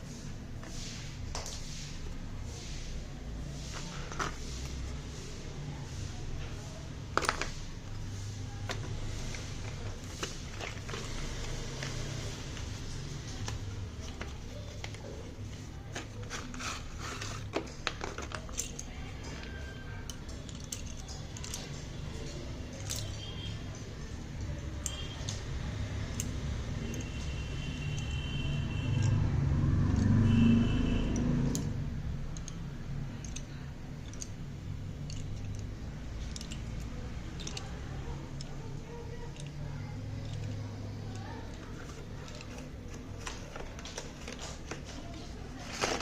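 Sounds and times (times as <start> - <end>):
packaging crinkling and clicking: 41.2 - 46.0.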